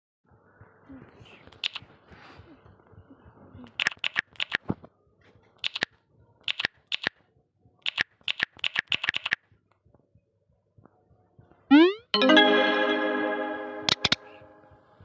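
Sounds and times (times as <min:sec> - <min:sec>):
sharp clicks and taps: 0:13.9 - 0:14.2.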